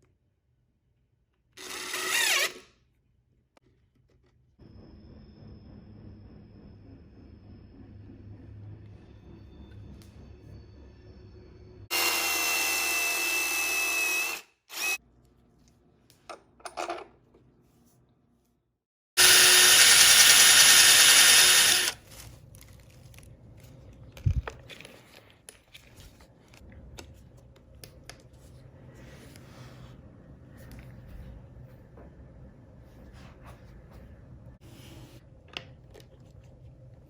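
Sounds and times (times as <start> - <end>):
power drill whining: 1.6 - 2.7, 11.9 - 15.0, 19.2 - 22.0.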